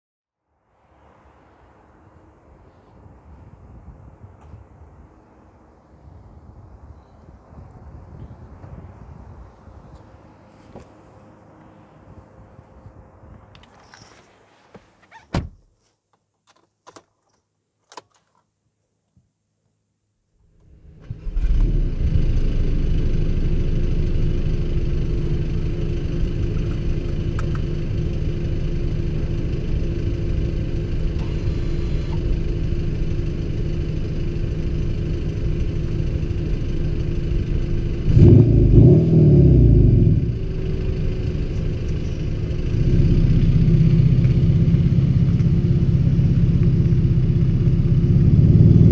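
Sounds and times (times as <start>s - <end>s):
diesel engine starting and idling: 20.5s - 48.9s.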